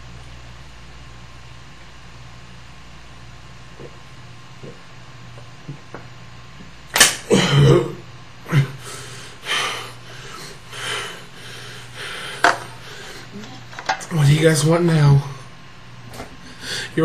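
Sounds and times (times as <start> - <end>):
sharp click: 6.9 - 7.2
man breathing noisily: 8.5 - 13.4, 16.4 - 17.0.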